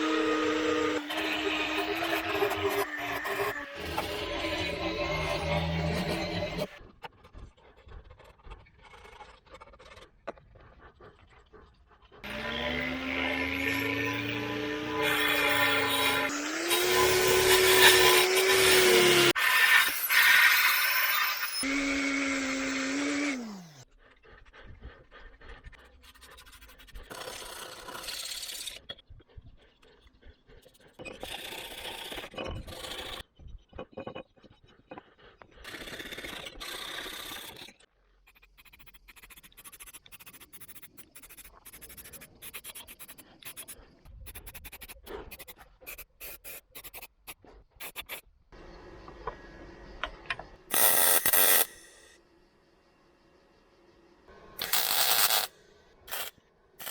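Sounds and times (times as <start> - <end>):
power tool whining down: 0.0 - 6.7, 12.2 - 23.8, 50.0 - 52.2, 54.4 - 56.9
rasping on metal: 56.1 - 56.9.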